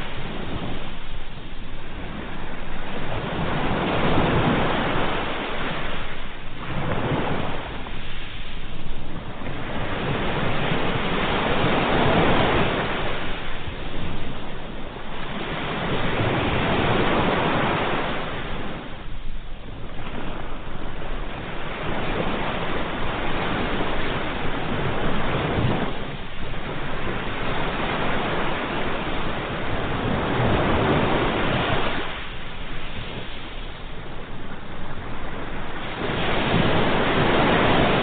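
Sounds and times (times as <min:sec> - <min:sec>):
ocean waves breaking: 0:00.0 - 0:38.0.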